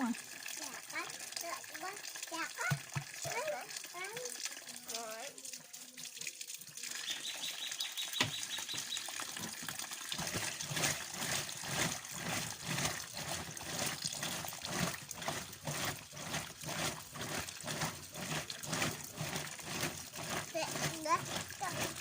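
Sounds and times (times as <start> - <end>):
water running into washing machine: 0.0 - 22.0.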